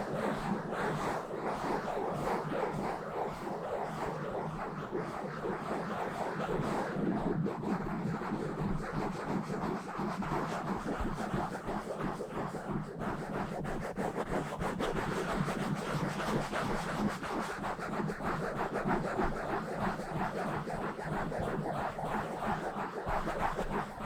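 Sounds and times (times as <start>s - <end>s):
scratching on microphone grille: 7.6s - 24.0s.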